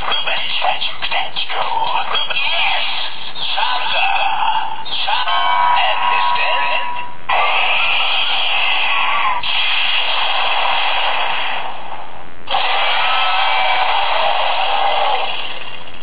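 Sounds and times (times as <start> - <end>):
loud hissing from toy speaker: 9.4 - 11.7, 12.5 - 15.9.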